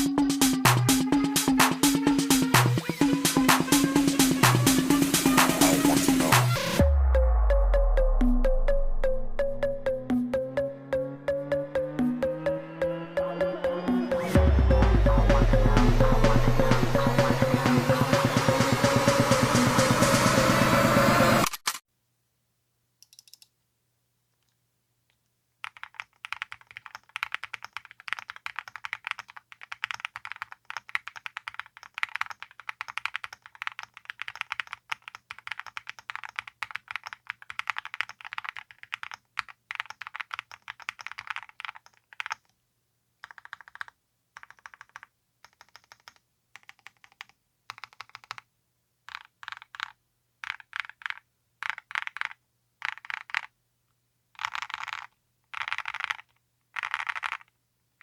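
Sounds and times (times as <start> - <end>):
mechanical keyboard typing: 23.0 - 23.5, 25.6 - 42.6, 43.2 - 48.5, 49.1 - 53.5, 54.4 - 57.5.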